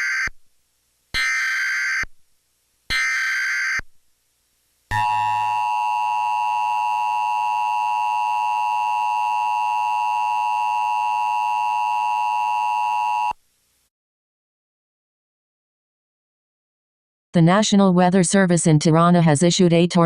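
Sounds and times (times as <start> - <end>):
two-tone alarm: 0.0 - 0.3, 1.2 - 2.1, 2.9 - 3.8, 4.9 - 13.4.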